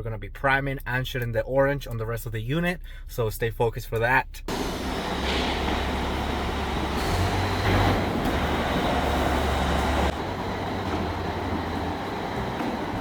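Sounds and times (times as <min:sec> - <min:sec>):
mechanical rumble and hiss: 0:04.3 - 0:13.0.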